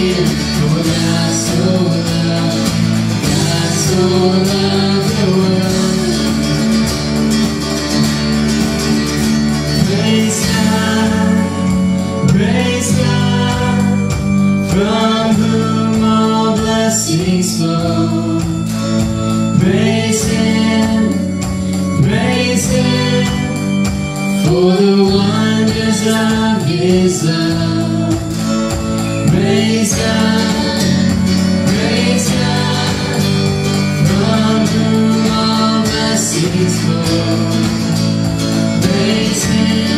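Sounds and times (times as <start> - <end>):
person singing: 0.0 - 6.8, 19.6 - 39.9
acoustic guitar: 0.0 - 39.9
steady bass line: 0.0 - 39.9.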